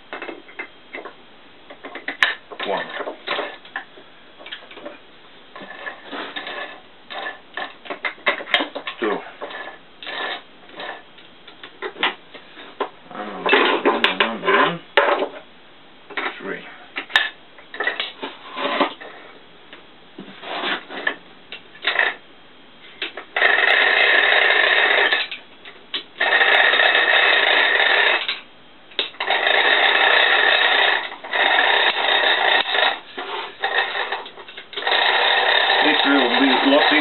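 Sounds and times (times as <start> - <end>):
metal-on-metal rasping: 5.6 - 11.1, 23.4 - 25.4, 26.2 - 28.4, 29.0 - 37.0.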